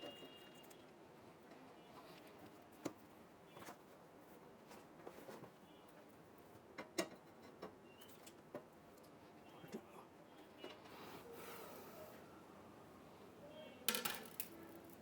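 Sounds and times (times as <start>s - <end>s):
clicks and taps of computer parts: 6.7s - 9.2s.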